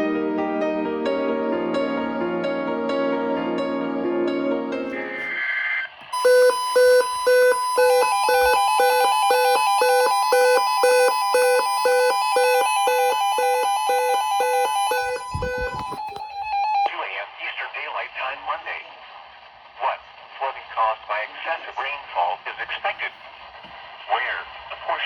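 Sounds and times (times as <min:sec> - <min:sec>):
second alert tone: 0:06.1 - 0:16.9
sharp electronic beep: 0:06.2 - 0:16.9
steady alert tone: 0:06.2 - 0:16.9.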